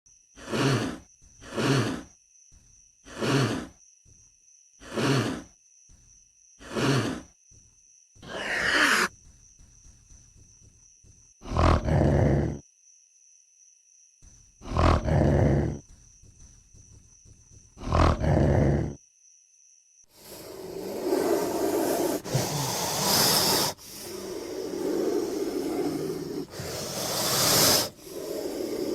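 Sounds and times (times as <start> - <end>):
dinosaur shrieking cries: 8.2 - 9.1.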